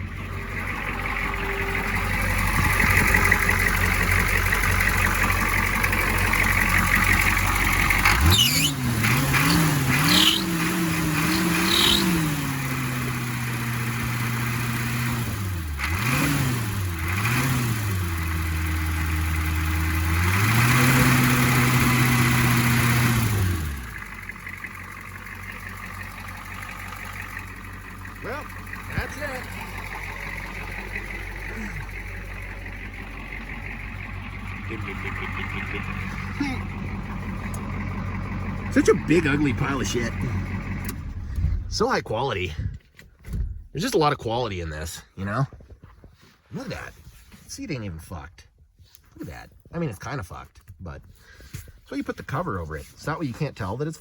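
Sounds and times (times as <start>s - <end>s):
diesel engine idling and revving: 0.0s - 54.0s.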